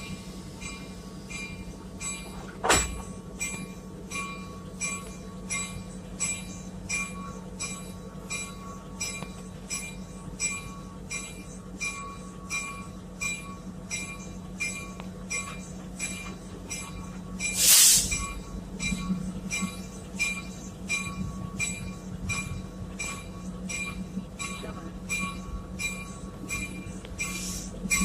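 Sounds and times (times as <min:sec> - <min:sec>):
locomotive bell ringing: 0:00.0 - 0:28.0
loud hiss: 0:17.6 - 0:18.2.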